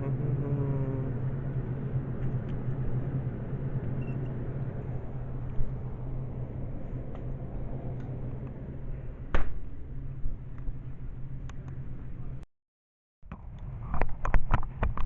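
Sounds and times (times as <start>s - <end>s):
rumbling background noise: 0.0s - 12.4s
steady low hum: 0.0s - 12.4s.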